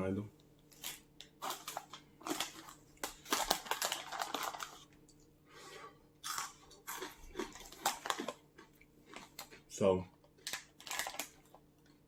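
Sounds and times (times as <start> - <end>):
plastic packaging crinkling: 1.4 - 4.9, 10.4 - 11.6.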